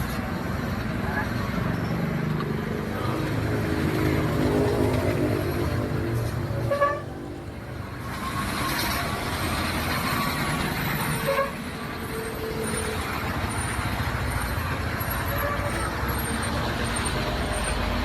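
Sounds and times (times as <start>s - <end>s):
engine and traffic noise: 0.0s - 18.0s
bus multi-tone horn: 2.8s - 14.0s, 14.6s - 17.9s
short horn notes: 3.1s - 7.7s.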